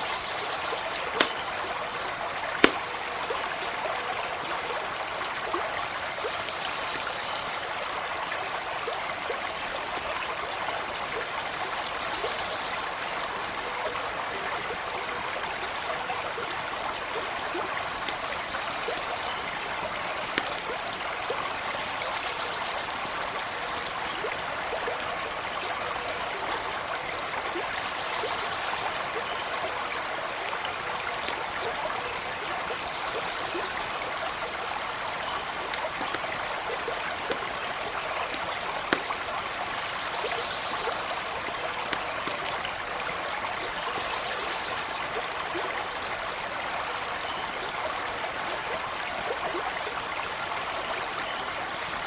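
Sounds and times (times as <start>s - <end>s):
small stream running: 0.0s - 52.0s
sharp little clicks: 1.0s - 1.5s, 2.6s - 2.9s.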